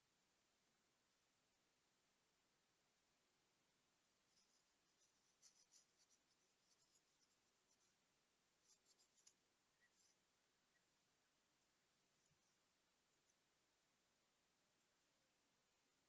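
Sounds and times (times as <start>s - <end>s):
small hand tools scratching: 4.3s - 8.0s, 8.6s - 10.2s.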